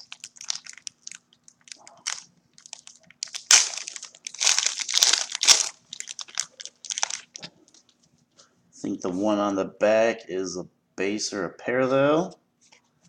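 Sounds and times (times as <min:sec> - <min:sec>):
plastic wrapper crinkling: 0:00.0 - 0:08.0.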